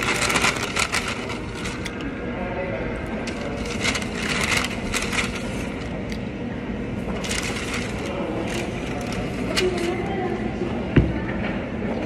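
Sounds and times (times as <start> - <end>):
crackly crunching: 0.0 - 2.2, 2.9 - 6.4, 7.0 - 10.3.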